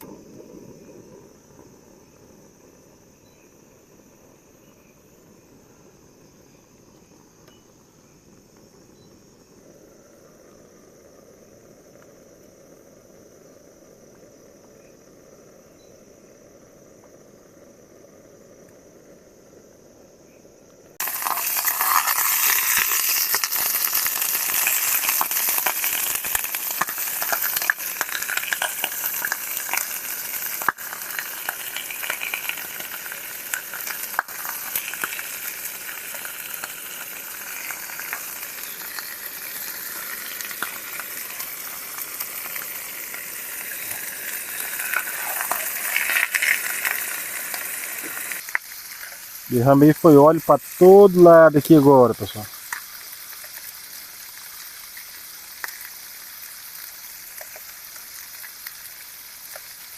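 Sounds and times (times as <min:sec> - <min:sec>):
food sizzling in hot oil: 0:21.0 - 0:59.9.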